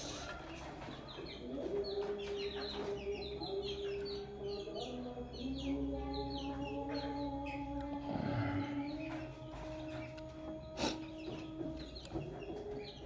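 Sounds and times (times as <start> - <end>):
birds chirping: 0.0 - 13.0
steady low tone: 4.0 - 12.2.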